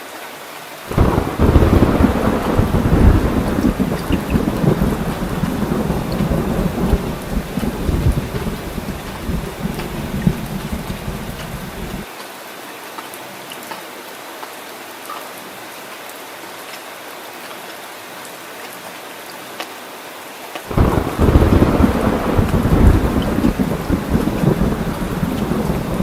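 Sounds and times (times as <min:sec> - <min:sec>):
heavy rain falling: 0:00.7 - 0:12.1, 0:20.5 - 0:26.0
thunder rumbling: 0:00.9 - 0:12.0, 0:20.7 - 0:26.0.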